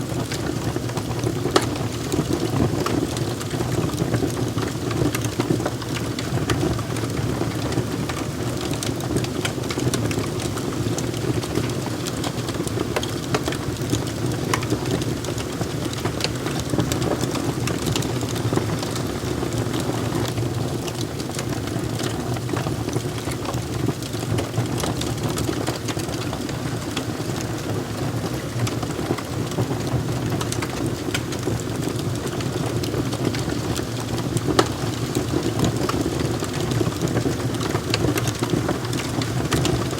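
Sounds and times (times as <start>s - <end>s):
fire popping and snapping: 0.0s - 39.9s.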